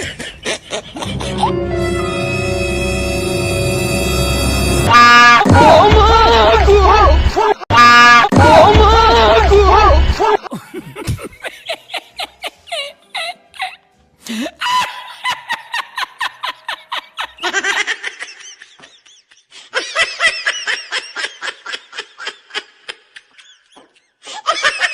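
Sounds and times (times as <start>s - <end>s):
high-pitched laughter: 0.0s - 1.6s, 24.4s - 24.9s.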